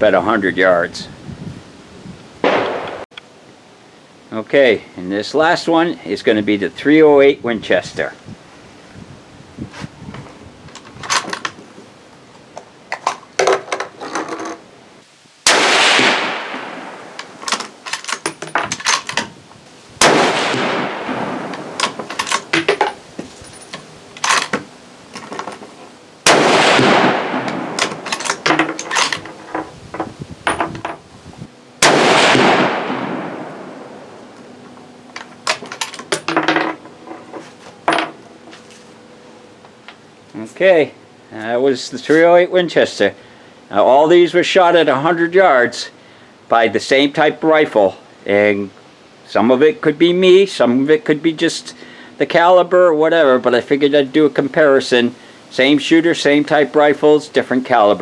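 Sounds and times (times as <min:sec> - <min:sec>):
rifle shots with echo: 0:02.4 - 0:03.0, 0:15.5 - 0:17.1, 0:20.0 - 0:22.0, 0:26.3 - 0:28.0, 0:31.8 - 0:33.9
rifle bolt clicking: 0:21.5 - 0:22.8.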